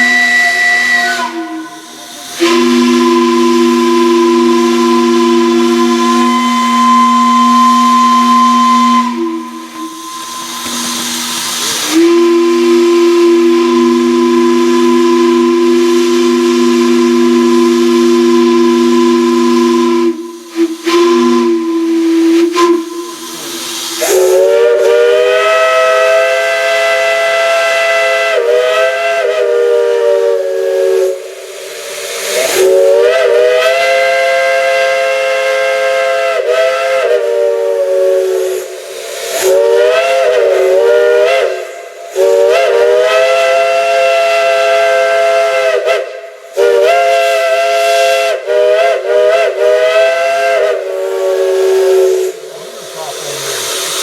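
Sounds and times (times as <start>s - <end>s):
higher multi-chime steam whistle: 0.0s - 54.0s
low steam whistle: 0.0s - 54.0s.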